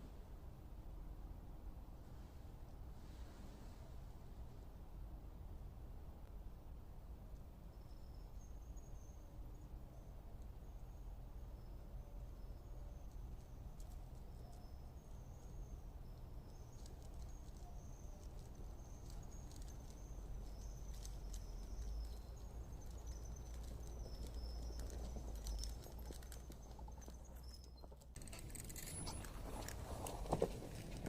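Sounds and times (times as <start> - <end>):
sharp clicks and rattles: 18.2 - 31.0.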